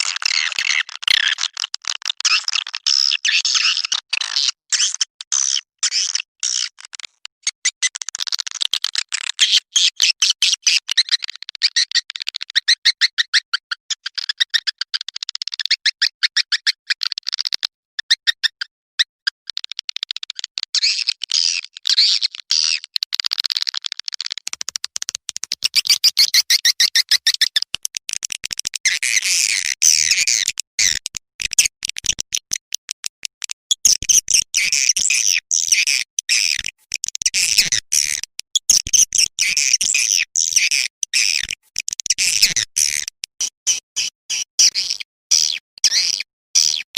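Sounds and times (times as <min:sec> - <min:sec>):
recorded swiftlet call: 0:24.5 - 0:28.2.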